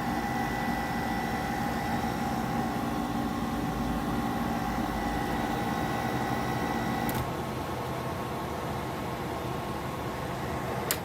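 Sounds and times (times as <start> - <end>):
air conditioner humming: 0.0 - 11.0
air conditioner click: 7.0 - 7.4, 10.8 - 11.0.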